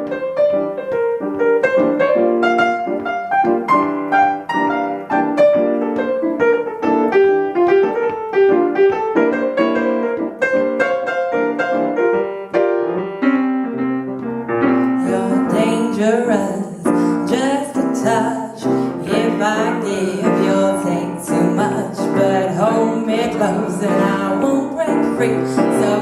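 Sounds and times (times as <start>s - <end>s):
piano playing: 0.0s - 26.0s
person singing: 14.9s - 26.0s.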